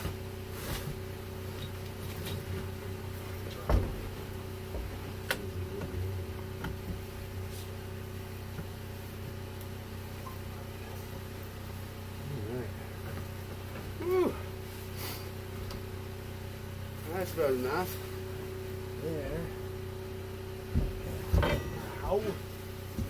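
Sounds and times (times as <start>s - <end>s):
low mechanical hum: 0.0s - 23.0s.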